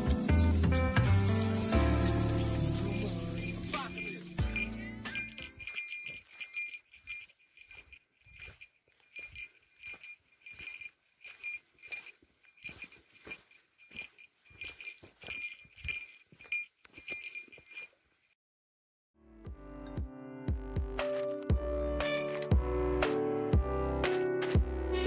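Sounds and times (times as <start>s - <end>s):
music: 0.0s - 5.4s, 19.2s - 25.0s
small metal bell jingling: 0.0s - 18.2s.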